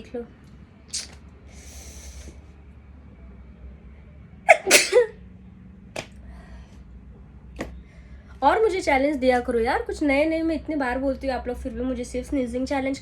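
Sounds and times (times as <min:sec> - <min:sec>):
breathy hiss: 0:01.0 - 0:02.4
woman sneezing: 0:04.5 - 0:05.1.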